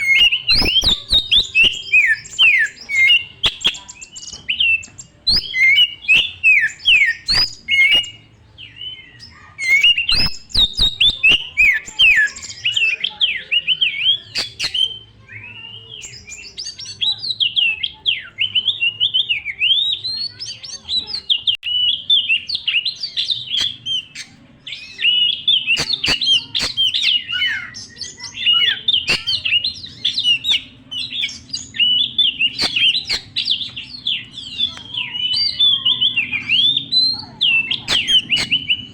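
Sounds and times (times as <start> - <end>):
sharp bird clicks: 0.0 - 8.2, 9.6 - 12.9, 14.3 - 15.0, 23.5 - 27.5, 28.4 - 35.0, 37.7 - 38.9
songbird singing: 0.0 - 38.9.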